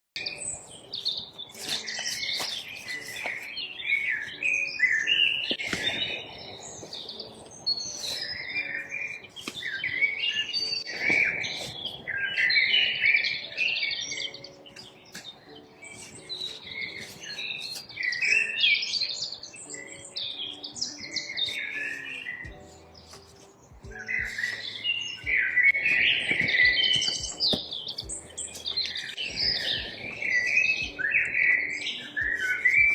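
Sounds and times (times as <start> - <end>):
songbirds chirping and twittering: 0.2 - 32.9.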